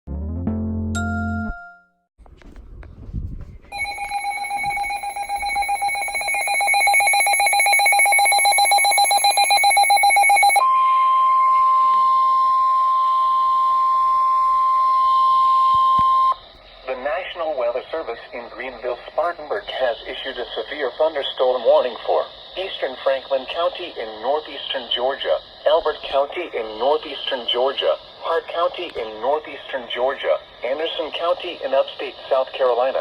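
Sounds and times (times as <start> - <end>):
pulsing electronic alarm beep: 3.7 - 16.5
steady alarm tone: 3.7 - 16.6.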